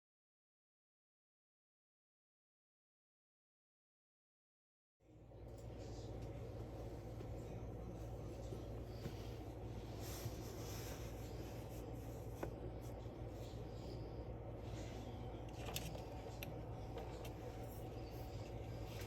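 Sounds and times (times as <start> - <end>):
faint room hum: 5.0 - 19.0.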